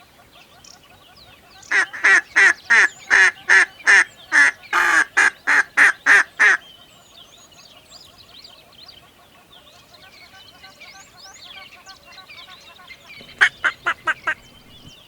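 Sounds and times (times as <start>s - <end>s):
duck quacking: 1.7s - 6.6s, 13.2s - 14.8s.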